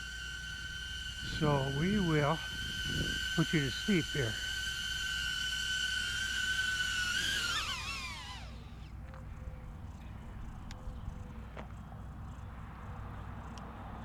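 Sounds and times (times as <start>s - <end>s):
drone propellers whining: 0.0s - 13.7s
faint clicks: 13.5s - 13.7s.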